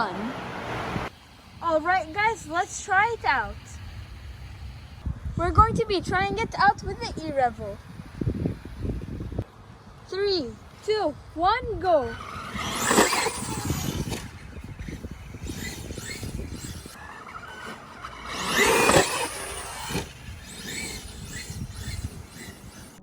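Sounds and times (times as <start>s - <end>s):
electric rc truck motor whine: 0.0s - 5.0s, 7.6s - 9.4s, 11.9s - 23.0s.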